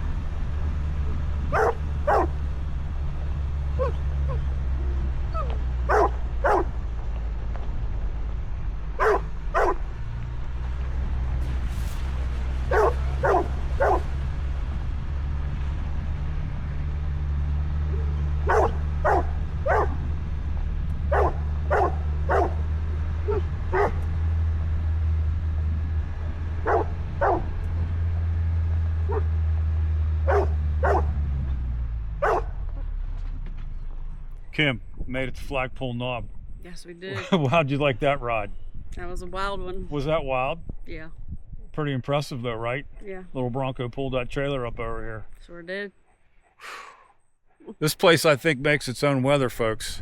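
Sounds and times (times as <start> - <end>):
car engine running: 0.0 - 46.0, 47.8 - 50.0
dog barking: 1.5 - 2.4, 3.8 - 4.4, 5.4 - 6.8, 9.0 - 9.9, 12.7 - 14.1, 17.9 - 20.1, 21.1 - 24.0, 26.6 - 27.6, 29.1 - 29.3, 30.2 - 31.2, 32.2 - 32.6.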